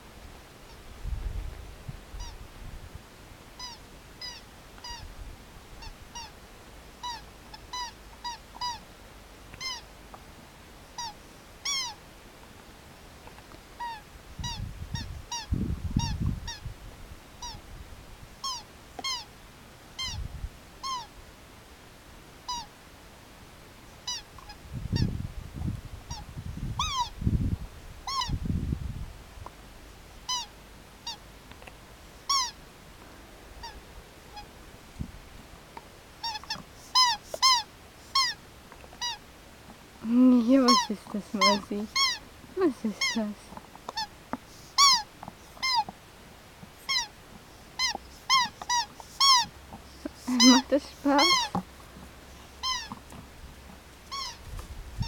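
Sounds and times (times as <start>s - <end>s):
squeaky rubber toy squeaking: 3.6s - 5.1s, 5.8s - 6.3s, 7.0s - 8.8s, 9.6s - 9.9s, 11.0s - 12.0s, 13.8s - 16.6s, 17.4s - 17.6s, 18.4s - 19.3s, 20.0s - 20.2s, 20.8s - 21.1s, 22.5s - 22.7s, 24.0s - 25.1s, 26.8s - 27.1s, 28.1s - 28.4s, 30.3s - 31.2s, 32.3s - 32.6s, 36.2s - 38.4s, 39.0s - 39.2s, 40.4s - 45.9s, 46.8s - 47.1s, 47.7s - 51.7s, 52.4s - 53.1s, 54.0s - 54.4s.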